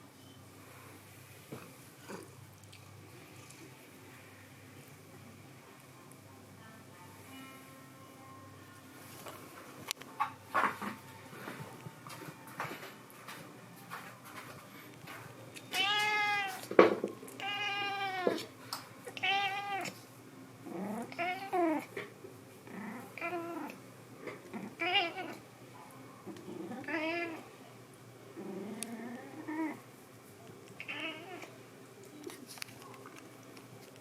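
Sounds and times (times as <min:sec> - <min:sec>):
cat meowing: 0:15.7 - 0:16.7, 0:17.4 - 0:18.4, 0:30.8 - 0:31.5.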